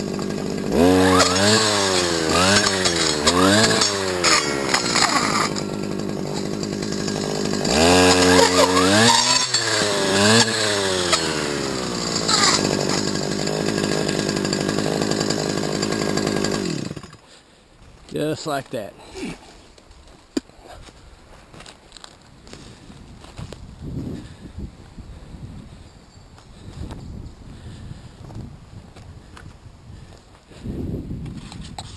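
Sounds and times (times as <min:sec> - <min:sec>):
brush cutter engine revving: 0:00.0 - 0:17.3.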